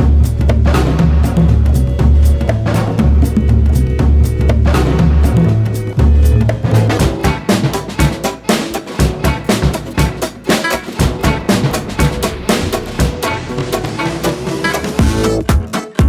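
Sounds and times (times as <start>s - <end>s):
bass: 0.0s - 7.4s, 11.1s - 15.7s
drum kit beat: 0.0s - 16.0s.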